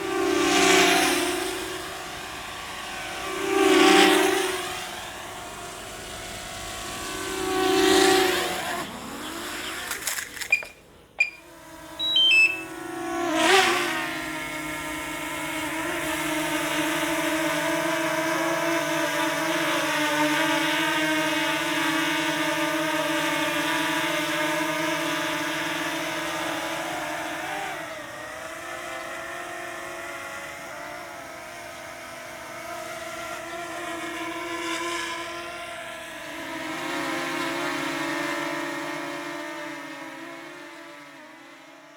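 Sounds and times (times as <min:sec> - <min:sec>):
drone propellers whining: 0:07.4 - 0:13.1
sharp clicks: 0:09.7 - 0:12.7
brief high beeps: 0:10.5 - 0:12.7.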